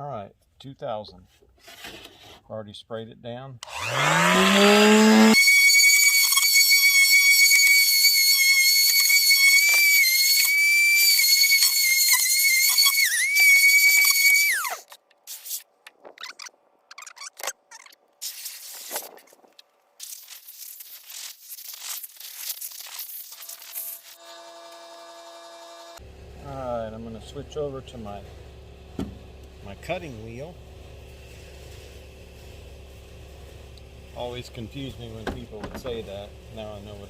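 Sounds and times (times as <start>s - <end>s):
power sander high-pitched whine: 3.6s - 14.8s, 21.8s - 26.0s.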